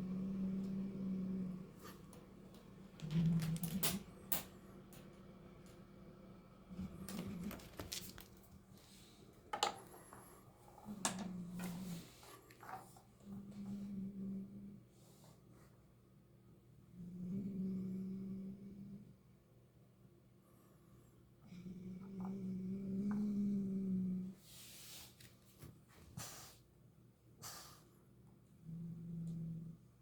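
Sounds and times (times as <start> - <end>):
cat growling: 0.0 - 2.0, 3.0 - 4.3.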